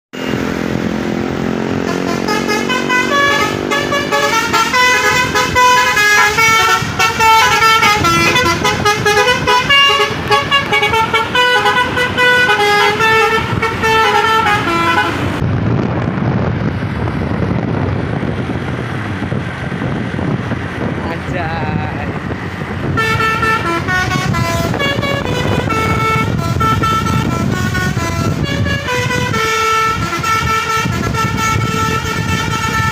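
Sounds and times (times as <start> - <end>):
musical vehicle horn melody: 1.4 - 15.4, 22.8 - 32.9
low rumble: 15.2 - 29.3.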